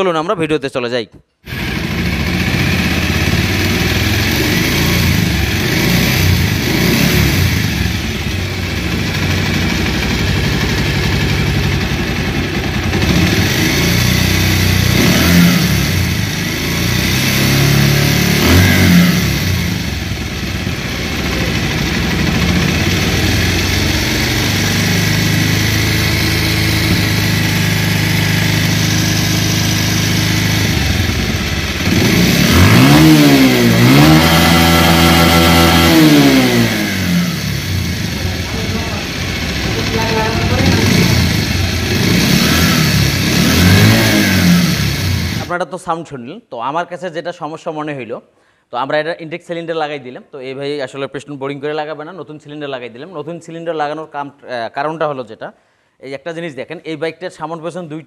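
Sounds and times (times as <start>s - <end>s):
motorcycle engine idling and revving: 1.5s - 45.5s.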